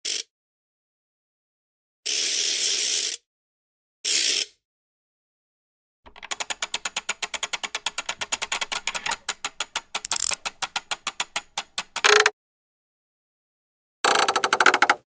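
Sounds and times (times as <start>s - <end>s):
gear mechanism clicking: 6.1s - 12.3s, 14.1s - 15.0s.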